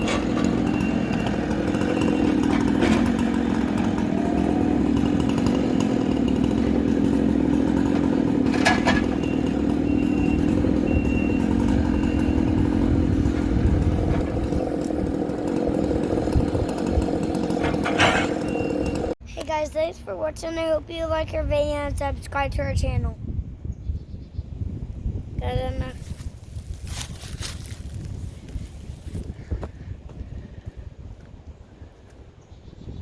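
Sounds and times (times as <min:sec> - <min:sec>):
chainsaw engine running: 0:00.0 - 0:19.2, 0:26.1 - 0:29.5.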